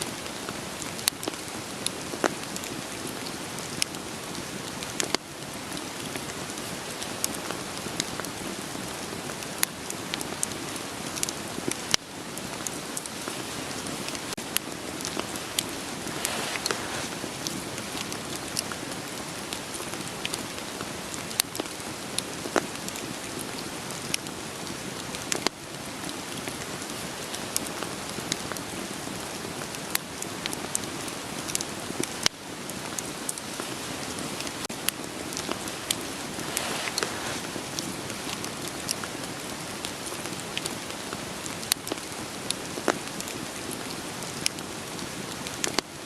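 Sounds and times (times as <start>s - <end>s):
steady rain falling: 0.0s - 46.0s
firewood crackling and popping: 0.2s - 45.8s.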